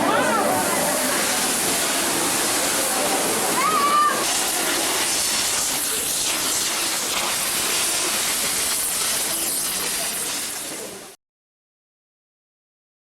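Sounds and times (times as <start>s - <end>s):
faint voices: 0.0s - 7.2s
loud crowd rushing noise: 0.0s - 7.3s.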